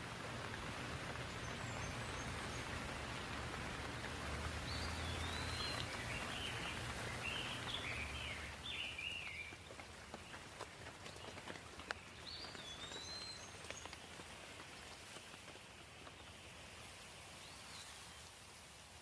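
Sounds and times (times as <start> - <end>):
rain falling: 0.0 - 19.0
bird singing warbling chirps: 4.6 - 9.6, 12.2 - 13.9.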